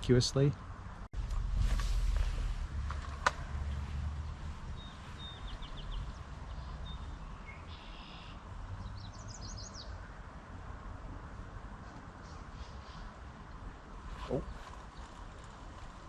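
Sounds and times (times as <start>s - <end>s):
low steady rumble: 0.0s - 7.5s
small birds chirping: 3.8s - 10.2s, 14.3s - 15.5s.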